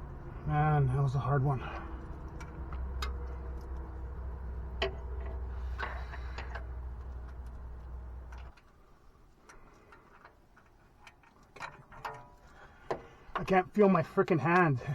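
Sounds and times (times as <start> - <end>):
low rumble: 0.0 - 8.5.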